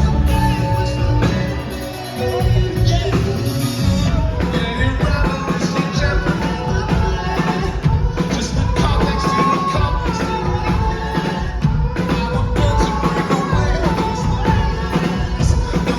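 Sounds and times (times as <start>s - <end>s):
heavy bass and guitars: 0.0s - 15.9s
person singing: 0.0s - 15.9s
pounding drums: 4.0s - 15.9s.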